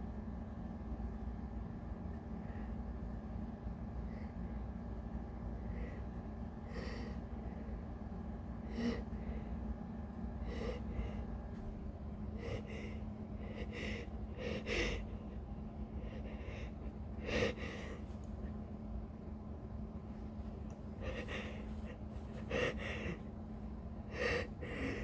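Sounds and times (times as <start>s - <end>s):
woman's sharp gasping breaths: 10.4s - 11.7s, 12.3s - 18.2s, 20.9s - 23.3s, 24.1s - 25.0s.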